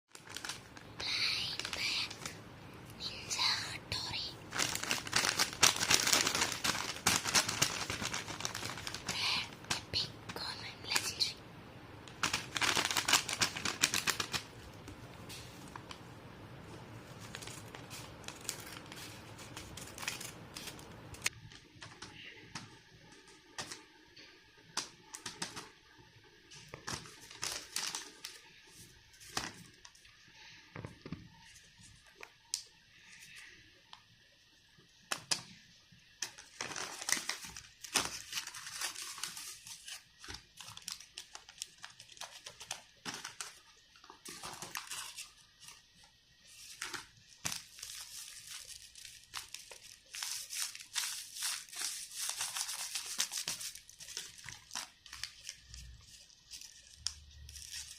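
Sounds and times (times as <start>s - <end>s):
packet crinkling and tearing: 0.1s - 2.4s, 3.0s - 9.8s, 12.1s - 14.7s, 17.1s - 21.3s, 26.7s - 28.4s, 36.2s - 57.9s.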